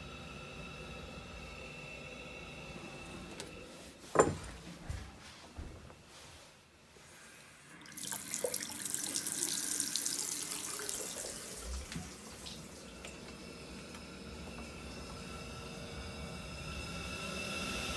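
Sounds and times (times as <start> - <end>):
tap water running: 7.3 - 17.9.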